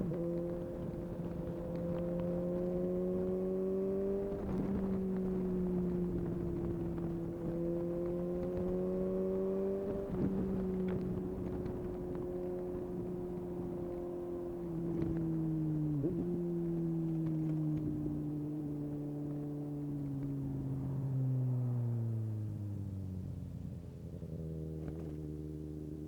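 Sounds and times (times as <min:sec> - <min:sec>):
motorcycle engine revving: 0:23.1 - 0:26.0.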